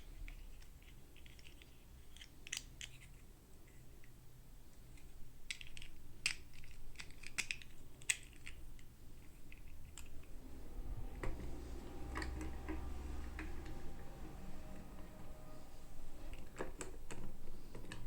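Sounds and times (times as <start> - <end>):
plastic toy pieces clicking: 0.2 - 3.8, 4.9 - 9.6
low hum: 9.5 - 18.0.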